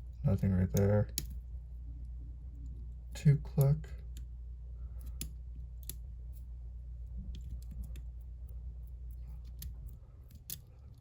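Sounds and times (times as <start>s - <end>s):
steady low hum: 0.0s - 11.0s
small sharp metal clicks: 5.0s - 6.0s.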